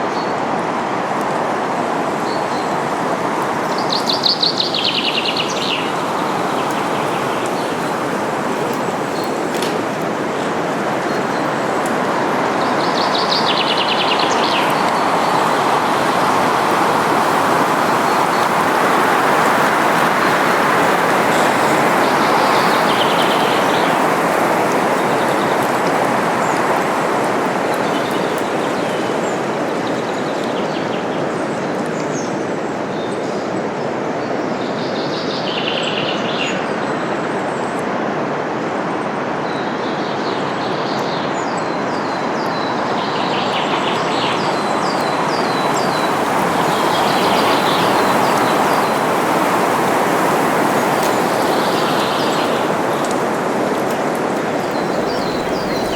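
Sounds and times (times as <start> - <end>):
wind rushing through leaves: 0.0 - 55.9
small birds chirping: 3.6 - 9.7, 40.8 - 55.9.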